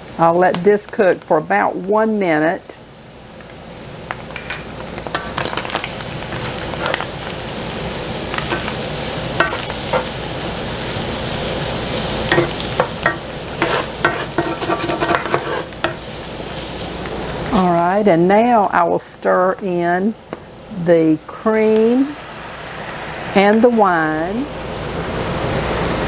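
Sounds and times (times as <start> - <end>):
vegetables sizzling in a skillet: 0.0 - 26.0
utensil scraping a pan: 12.3 - 16.1.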